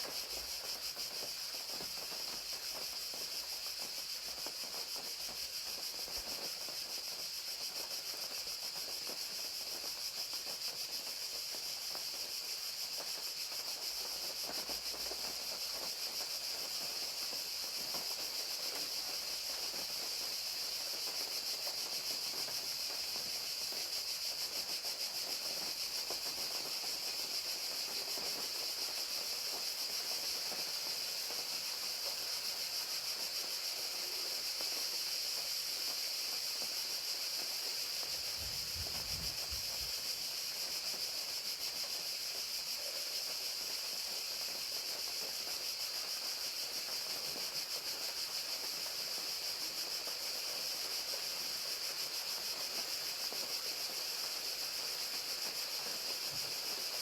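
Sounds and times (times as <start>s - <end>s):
crickets chirping: 0.0s - 57.0s
rain pattering: 12.9s - 57.0s.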